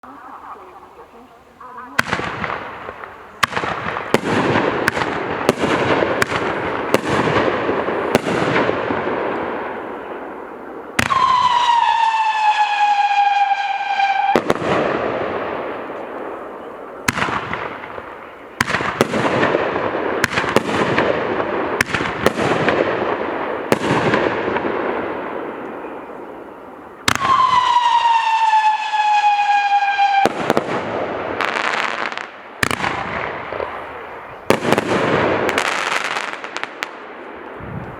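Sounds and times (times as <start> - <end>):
firework bangs with crackling: 2.0 - 37.9
firework whistling tone: 11.0 - 14.6, 25.0 - 30.6.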